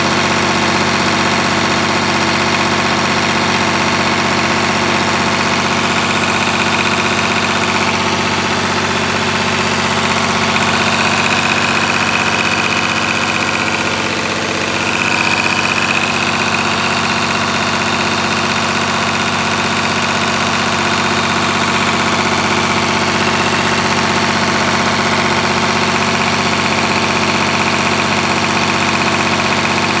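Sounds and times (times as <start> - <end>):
engine running with exhaust leak: 0.0 - 30.0.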